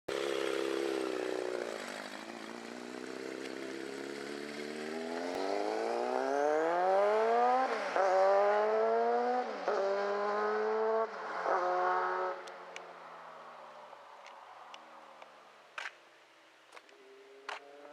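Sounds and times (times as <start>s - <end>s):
motorcycle engine revving: 0.1s - 12.5s.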